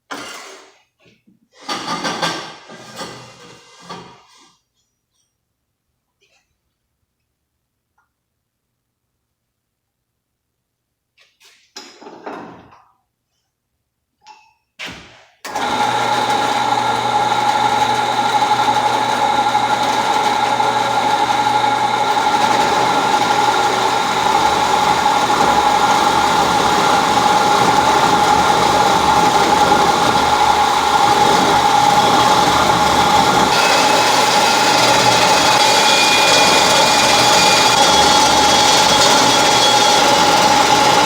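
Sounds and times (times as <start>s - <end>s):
electric metal-cutting saw whining: 15.5s - 41.0s.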